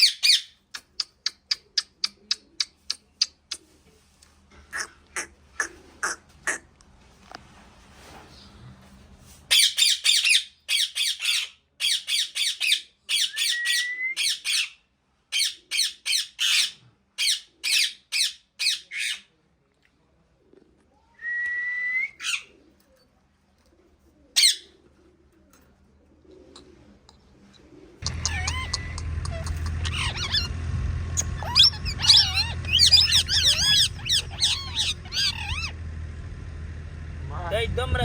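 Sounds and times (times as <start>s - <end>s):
parrot squawking: 0.0s - 0.6s, 4.7s - 6.7s, 9.5s - 19.3s, 22.2s - 22.5s, 24.4s - 24.7s, 28.0s - 35.8s
parrot whistle: 13.1s - 14.7s, 28.0s - 30.5s, 31.2s - 35.7s.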